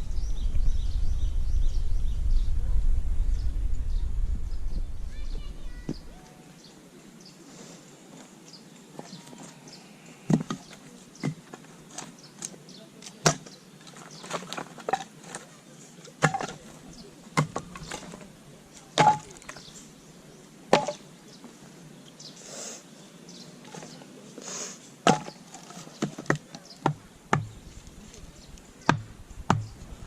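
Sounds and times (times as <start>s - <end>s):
soft hisses: 2.5s - 8.5s, 22.2s - 23.0s, 23.6s - 25.0s
axe chopping wood: 13.2s - 13.6s, 16.2s - 16.6s, 17.4s - 18.2s, 19.0s - 19.6s, 20.7s - 21.0s, 25.0s - 25.4s, 26.0s - 27.6s, 28.8s - 29.8s.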